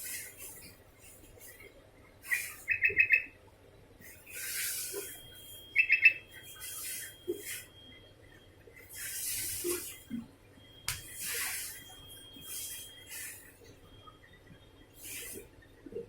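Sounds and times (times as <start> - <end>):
bulbul calling: 2.3 - 3.3, 5.8 - 6.2.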